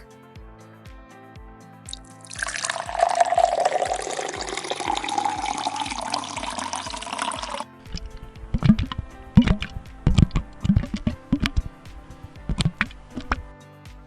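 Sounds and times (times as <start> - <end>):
background music with steady beat: 0.0 - 14.0
water pouring into sink drain: 2.3 - 13.4.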